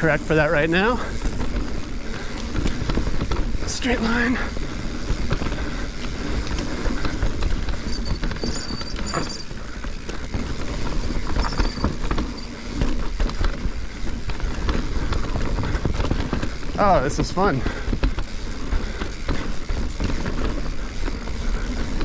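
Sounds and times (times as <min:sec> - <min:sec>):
disc brakes squealing: 0:00.0 - 0:01.5, 0:07.8 - 0:09.6, 0:10.9 - 0:12.7
bike rattling and knocking: 0:00.0 - 0:22.0
bike tyres on dirt trail: 0:00.0 - 0:22.0.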